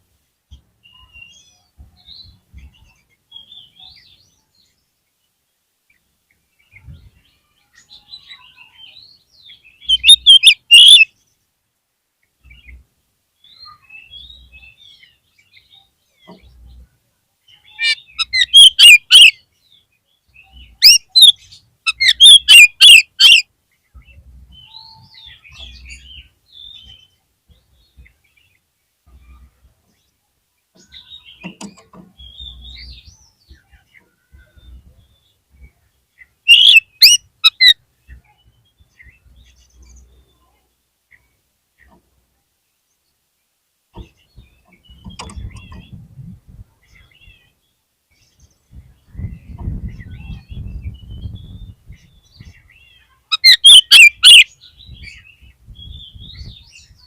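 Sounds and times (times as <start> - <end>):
bird chirps and whistles: 9.8 - 11.1, 17.8 - 19.3, 20.8 - 23.4, 36.5 - 37.8, 53.3 - 54.5
bird harsh rapid notes: 9.9 - 11.1, 17.8 - 19.3, 21.9 - 23.4, 36.5 - 37.8, 53.3 - 54.4.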